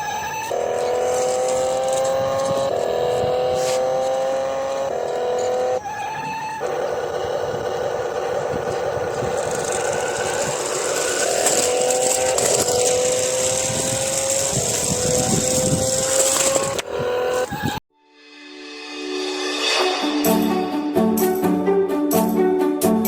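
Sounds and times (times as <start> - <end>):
toy car motor whine: 0.0 - 17.8
rattling hiss of gears: 8.9 - 16.8.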